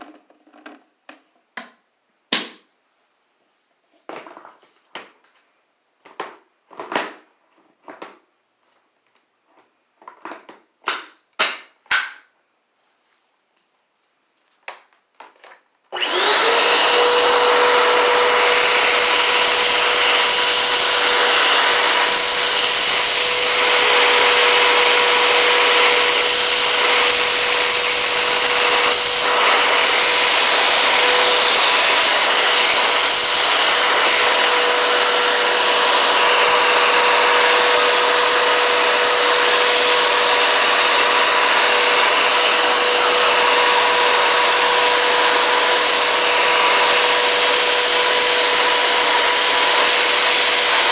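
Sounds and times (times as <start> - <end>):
vacuum cleaner motor whine: 15.9 - 50.9
vacuum airflow hiss: 16.6 - 50.9.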